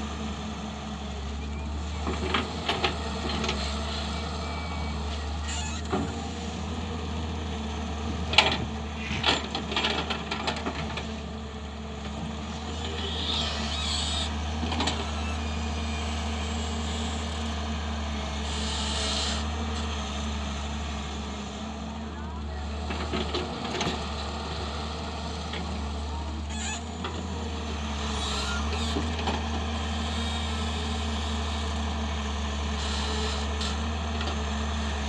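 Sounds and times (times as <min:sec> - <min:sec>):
diesel engine running: 0:00.0 - 0:35.0.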